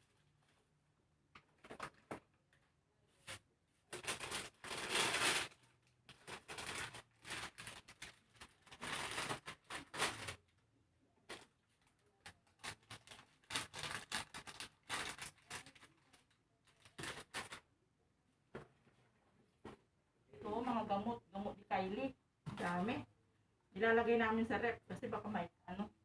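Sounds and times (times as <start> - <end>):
plastic packets rustling and clicking: 1.3 - 2.7, 3.3 - 10.6, 11.2 - 17.7.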